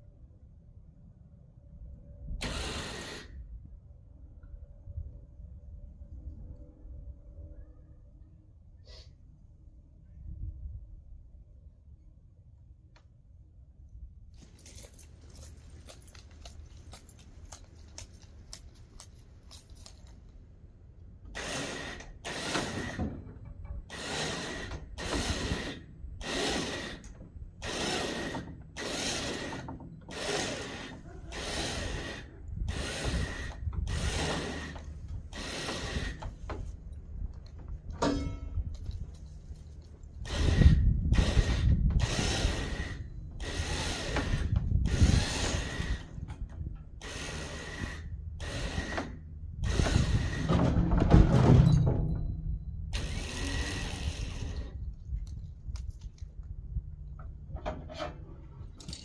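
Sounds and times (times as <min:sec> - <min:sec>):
hand-cranked mechanism strokes: 0:23.9 - 0:36.8.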